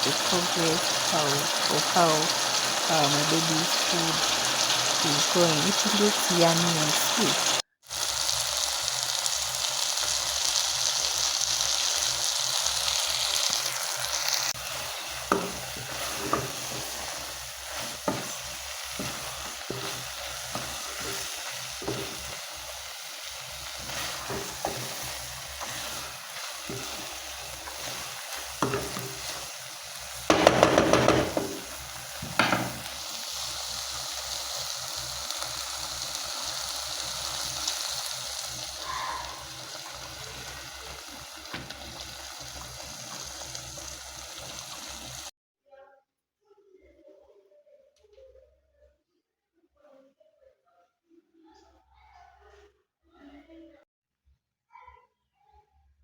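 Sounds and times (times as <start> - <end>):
food sizzling in pot: 0.0 - 45.3
spoon scraping pot: 14.6 - 22.8, 23.4 - 33.0.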